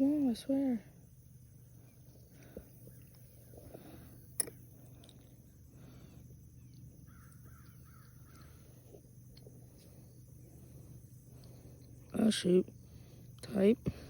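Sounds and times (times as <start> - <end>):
low steady hum: 0.0 - 14.0
bird calling: 6.6 - 8.8.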